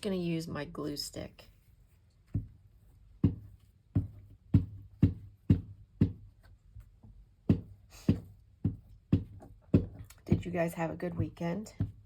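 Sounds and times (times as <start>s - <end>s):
glue stick knocking on desk: 7.4s - 10.6s.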